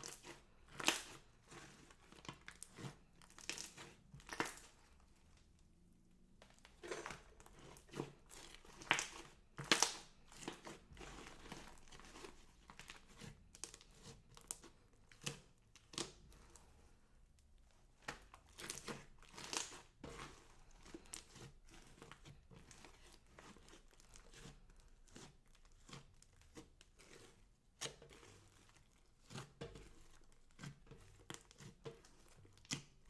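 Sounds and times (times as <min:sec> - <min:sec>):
slime materials crinkling: 0:00.0 - 0:05.4, 0:06.4 - 0:16.6, 0:18.0 - 0:27.2.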